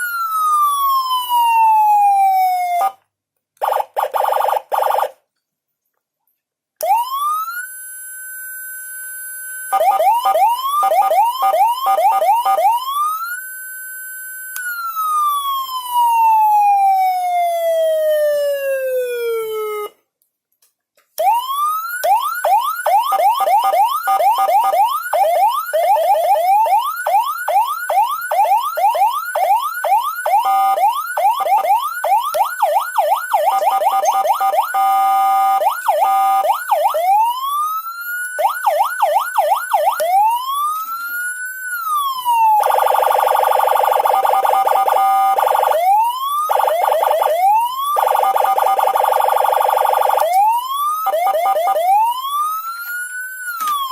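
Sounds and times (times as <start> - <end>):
electronic siren yelp sweeps: 9.7 - 13.4, 21.2 - 53.9.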